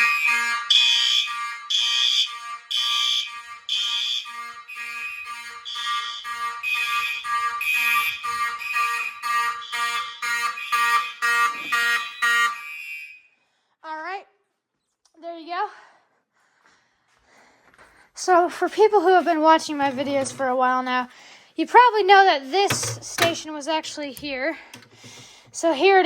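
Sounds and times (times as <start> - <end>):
fire alarm horns pulsing: 0.0 - 13.4.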